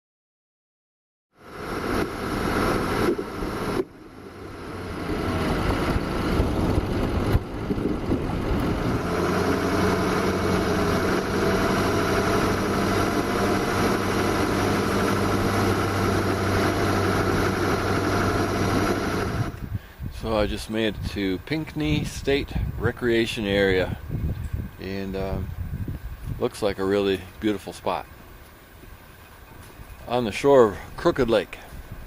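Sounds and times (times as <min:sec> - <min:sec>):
car engine idling: 0:01.4 - 0:19.8
engine knocks: 0:01.6 - 0:19.7.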